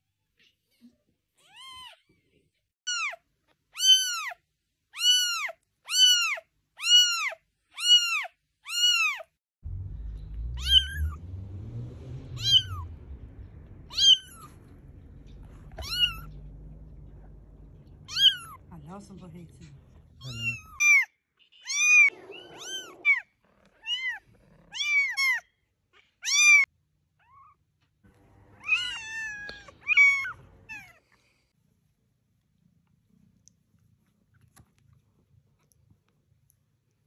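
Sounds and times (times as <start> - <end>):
kitten meowing: 5.0 - 9.2, 10.6 - 11.2, 12.4 - 13.0, 13.9 - 14.6, 15.6 - 16.5, 18.0 - 18.6, 20.2 - 23.2, 28.6 - 31.0
low rumble: 9.6 - 20.8.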